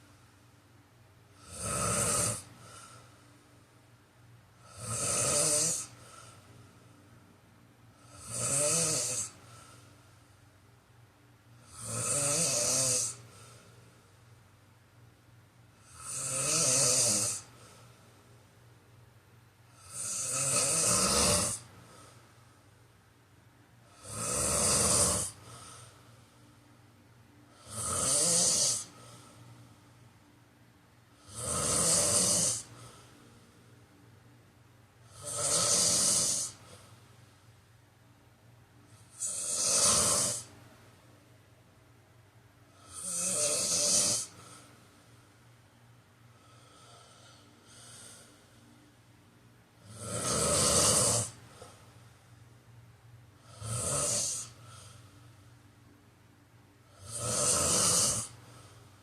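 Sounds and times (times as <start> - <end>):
person snoring: 1.4 - 3.1, 4.6 - 6.4, 8.0 - 9.8, 11.6 - 13.8, 15.8 - 17.9, 19.7 - 22.2, 23.8 - 26.4, 27.5 - 29.8, 31.2 - 33.6, 35.0 - 36.9, 38.9 - 40.5, 42.7 - 44.7, 46.4 - 48.7, 49.8 - 51.8, 53.4 - 55.1, 56.9 - 58.8.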